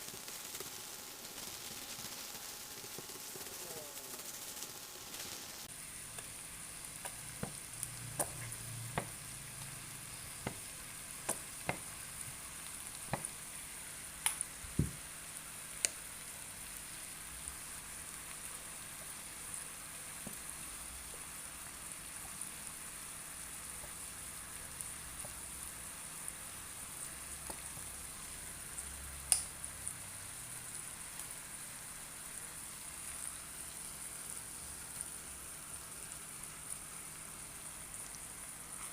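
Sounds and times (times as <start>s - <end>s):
food sizzling in a pan: 0.0s - 38.9s
utensil clicking and tapping: 10.4s - 11.8s, 13.1s - 13.3s.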